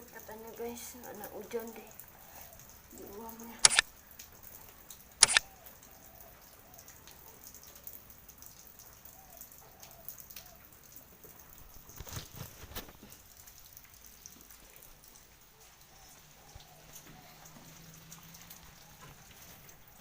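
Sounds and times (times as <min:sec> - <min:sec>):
light rain pattering: 0:00.0 - 0:20.0.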